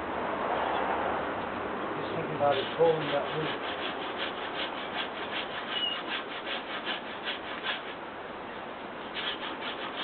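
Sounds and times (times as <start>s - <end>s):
hand saw cutting wood: 2.4s - 8.0s, 9.1s - 10.0s.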